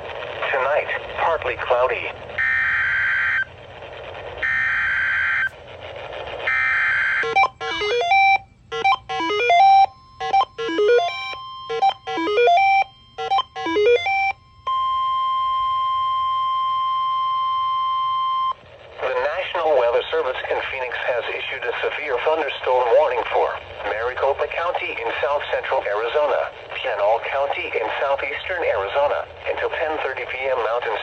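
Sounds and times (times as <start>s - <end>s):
steady warning alarm tone: 2.4s - 3.6s, 4.4s - 5.6s, 6.5s - 18.6s
warbling alert data tones: 6.6s - 15.0s.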